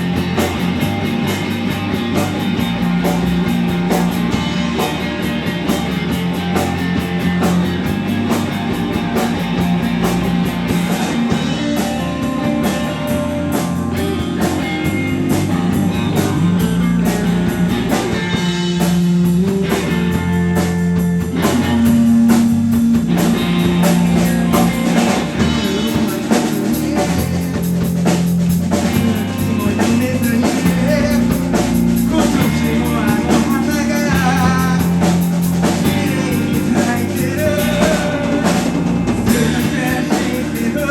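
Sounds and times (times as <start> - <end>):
bass guitar: 0.0 - 40.9
drum kit: 0.0 - 40.9
electric guitar: 0.0 - 40.9
person singing: 23.9 - 27.8, 28.9 - 40.9.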